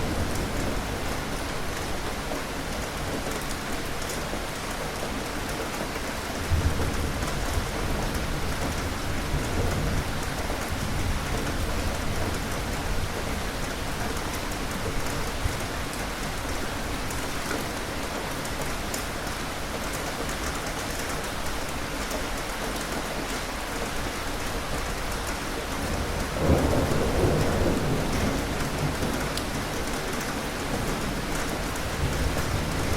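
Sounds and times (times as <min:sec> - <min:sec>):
rain pattering: 0:00.0 - 0:32.9
thunder rumbling: 0:25.8 - 0:32.9.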